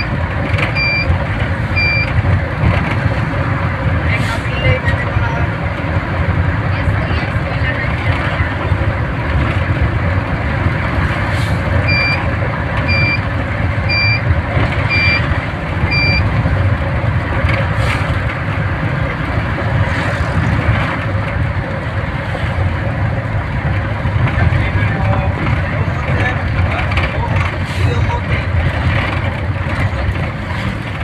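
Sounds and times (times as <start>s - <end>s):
vehicle road rumble: 0.0s - 31.0s
short high electronic beeps: 11.9s - 12.2s, 12.9s - 13.2s, 13.9s - 14.2s, 14.9s - 15.2s, 15.9s - 16.2s.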